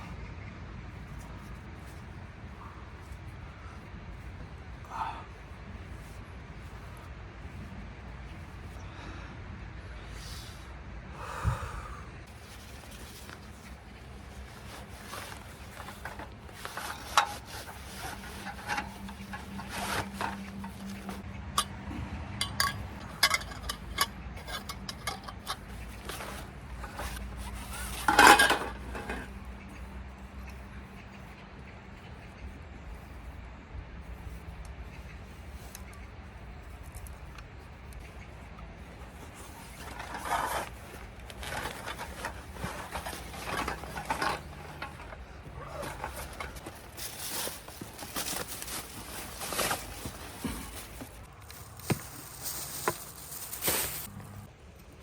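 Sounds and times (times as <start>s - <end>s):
utensils and dishes clinking: 14.6s - 21.8s, 22.4s - 29.3s, 39.8s - 54.4s.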